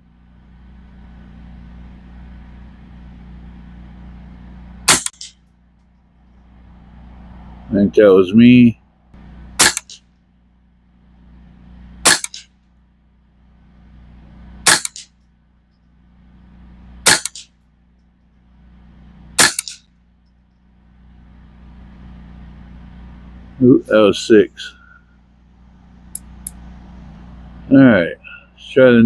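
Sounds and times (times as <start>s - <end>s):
rifle shots: 4.9s - 5.4s, 9.6s - 10.1s, 12.0s - 12.6s, 14.6s - 15.1s, 17.0s - 17.5s, 19.4s - 19.9s.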